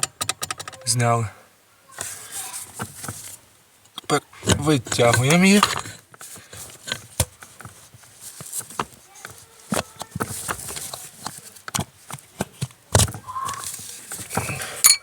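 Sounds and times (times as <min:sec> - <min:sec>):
metallic clicks and knocks: 0:00.0 - 0:00.8.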